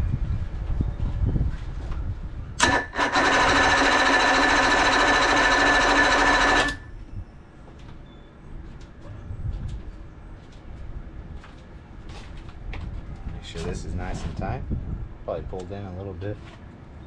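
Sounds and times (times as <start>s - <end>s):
electric starter cranking engine: 2.6s - 6.9s.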